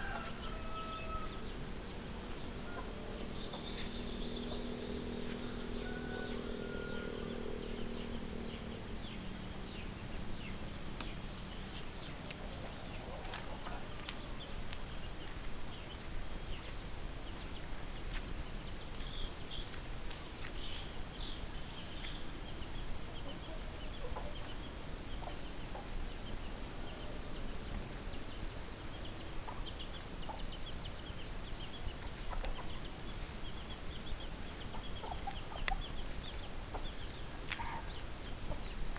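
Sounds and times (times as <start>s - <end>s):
background hiss: 0.0s - 38.9s
low steady hum: 0.0s - 38.9s
chickens clucking: 32.0s - 33.7s, 34.5s - 38.8s.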